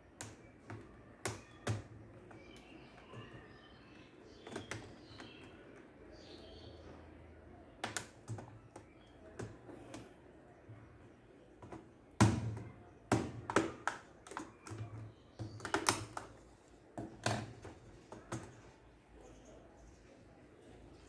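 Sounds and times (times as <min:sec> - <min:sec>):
clicks and taps of laptop parts: 0:00.2 - 0:03.3, 0:04.4 - 0:05.5, 0:07.8 - 0:10.1, 0:11.6 - 0:16.4, 0:17.0 - 0:18.7.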